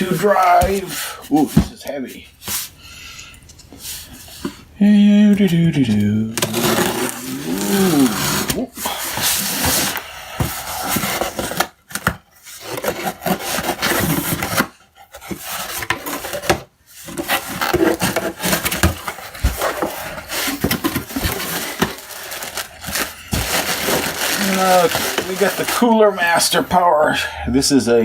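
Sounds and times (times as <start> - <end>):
cardboard rustling and scraping: 0.0 - 1.8, 6.3 - 26.7.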